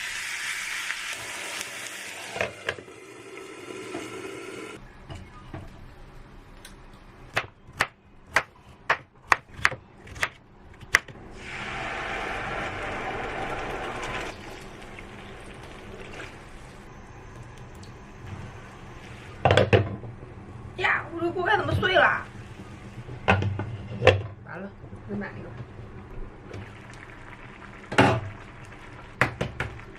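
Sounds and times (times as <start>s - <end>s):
water running: 0.9s - 4.8s, 11.4s - 16.8s.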